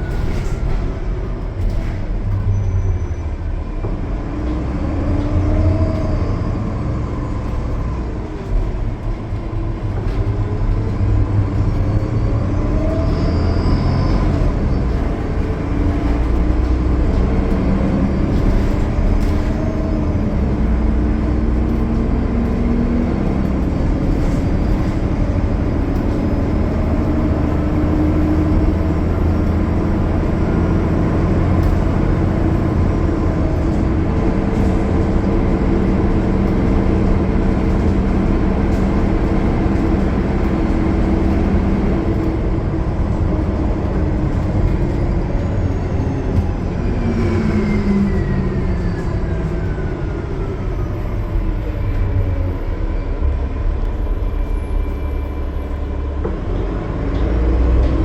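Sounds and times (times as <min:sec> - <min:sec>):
bus engine droning and whining: 0:00.0 - 0:58.0
road noise: 0:00.0 - 0:58.0.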